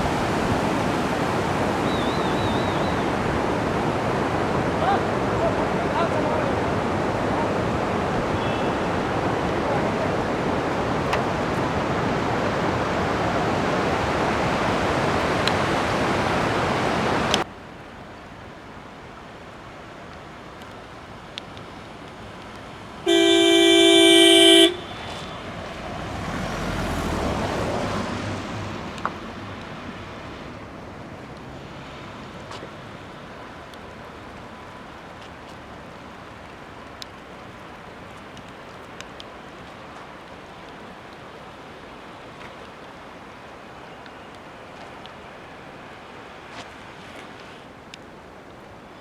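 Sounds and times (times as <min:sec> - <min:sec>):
vehicle horn blast: 0:08.3 - 0:09.0, 0:23.0 - 0:25.5
vehicle passing: 0:23.0 - 0:32.5.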